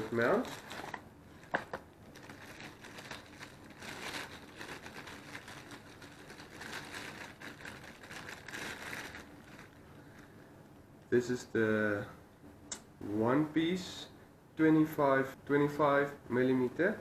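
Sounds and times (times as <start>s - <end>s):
packaging rustling and crinkling: 0.0s - 10.4s.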